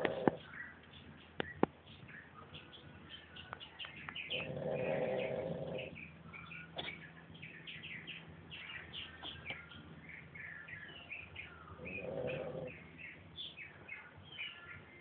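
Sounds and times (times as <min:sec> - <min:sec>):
dog snoring: 0:00.0 - 0:00.4, 0:04.3 - 0:06.0, 0:11.8 - 0:12.8
small birds chirping: 0:00.0 - 0:15.0.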